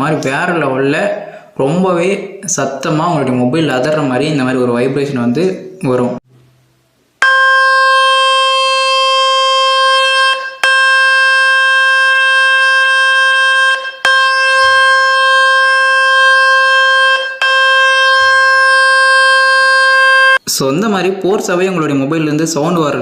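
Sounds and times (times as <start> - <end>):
loud buzzing tone: 7.2 - 20.4.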